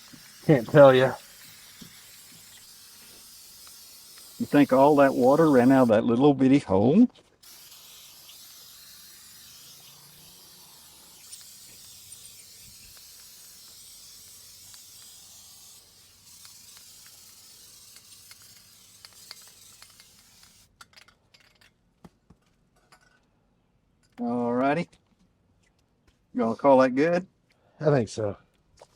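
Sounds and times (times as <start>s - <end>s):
aerosol can spray hissing: 0.0s - 6.0s, 7.4s - 20.7s.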